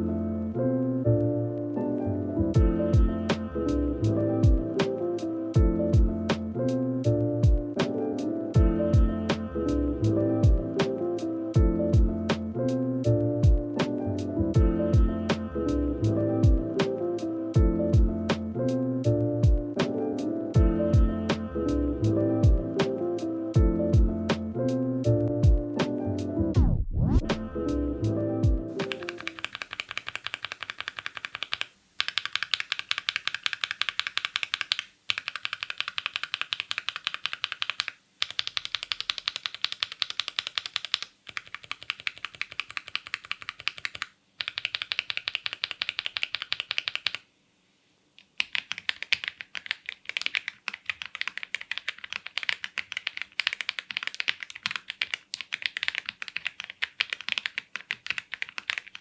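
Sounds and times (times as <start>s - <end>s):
fast mechanical keyboard typing: 28.8s - 47.2s, 48.4s - 59.0s.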